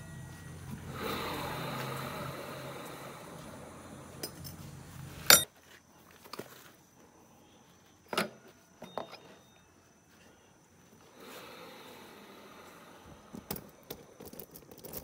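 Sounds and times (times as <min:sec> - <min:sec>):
scooter engine idling: 0:00.0 - 0:05.4
light metallic clinks: 0:04.1 - 0:05.5.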